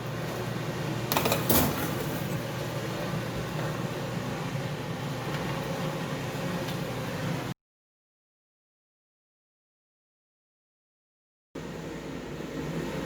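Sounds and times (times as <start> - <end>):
appliance fan humming: 0.0 - 7.6, 11.6 - 13.0.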